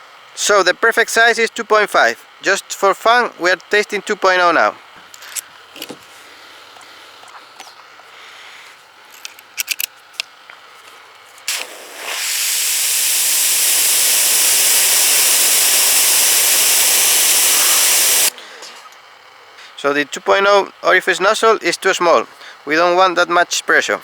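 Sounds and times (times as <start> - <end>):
pressure washer water jet hissing: 11.5 - 18.3.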